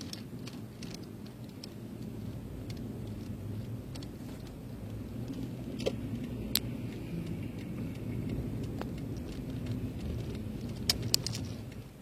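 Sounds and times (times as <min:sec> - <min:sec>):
car driving rumble: 0:00.0 - 0:12.0
sharp clicks: 0:00.0 - 0:12.0.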